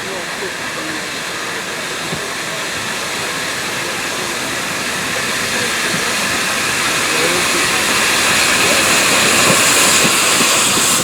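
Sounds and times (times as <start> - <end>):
steam locomotive hissing steam: 0.0 - 11.0.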